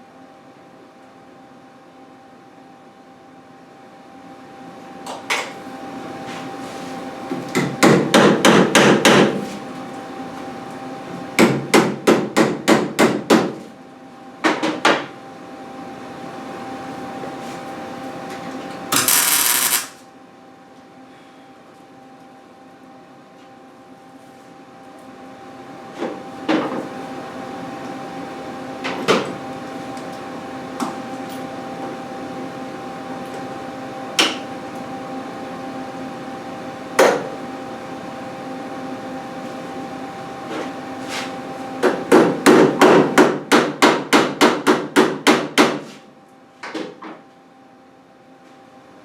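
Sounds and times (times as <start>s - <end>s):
hammer tapping on sheet metal: 7.6s - 9.4s, 11.4s - 13.6s, 41.8s - 45.8s
steady hum: 18.8s - 28.9s.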